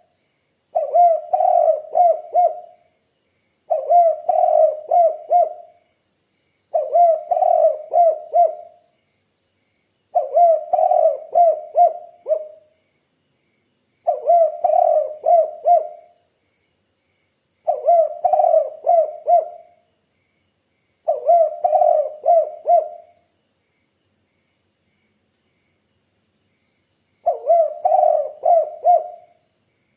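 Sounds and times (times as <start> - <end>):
dove cooing: 0.7 - 2.8, 3.7 - 5.8, 6.7 - 8.8, 10.1 - 12.6, 14.1 - 16.2, 17.7 - 19.8, 21.1 - 23.2, 27.2 - 29.4.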